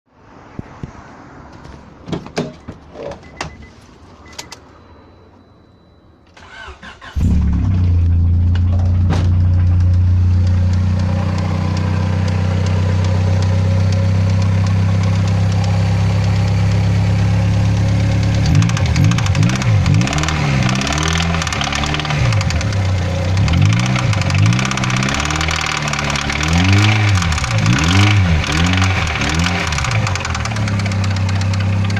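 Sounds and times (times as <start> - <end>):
car engine cranking and idling: 6.3 - 31.9
fast ticking engine knock: 18.4 - 31.9.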